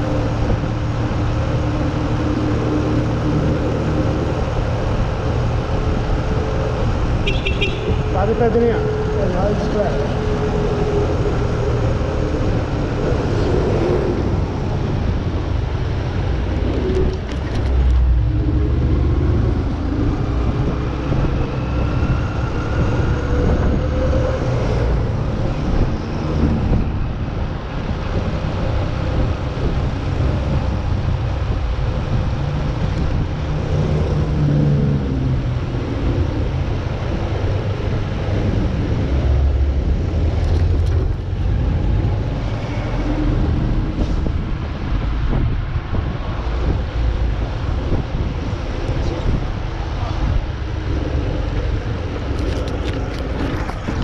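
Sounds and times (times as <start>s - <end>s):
vehicle engine and road rumble: 0.0s - 54.0s
wind buffeting microphone: 0.0s - 54.0s.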